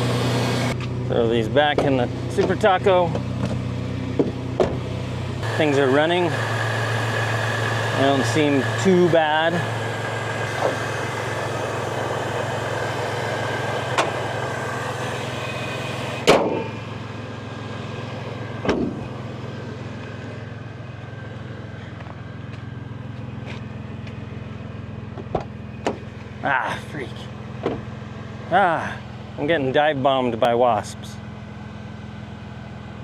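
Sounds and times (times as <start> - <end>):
engine idling: 0.0 - 33.0
sharp knocks: 16.2 - 16.7.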